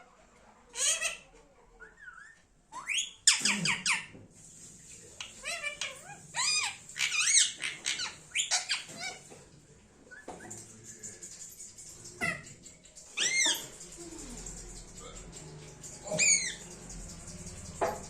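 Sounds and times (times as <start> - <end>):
parakeet shrill squawks: 5.4 - 9.2, 13.1 - 13.8, 16.0 - 16.6.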